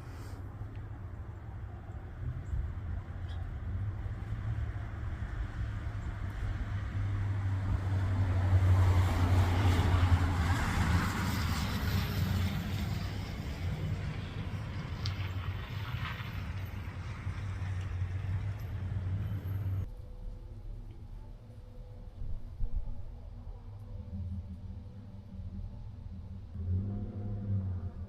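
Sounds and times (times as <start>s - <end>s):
vehicle engine passing: 1.5s - 19.9s, 26.2s - 28.0s.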